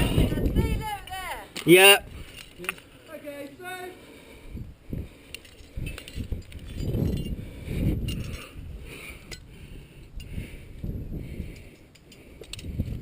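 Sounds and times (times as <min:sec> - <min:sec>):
metal carabiners clinking: 0:01.0 - 0:03.2, 0:05.2 - 0:10.4, 0:11.5 - 0:13.0.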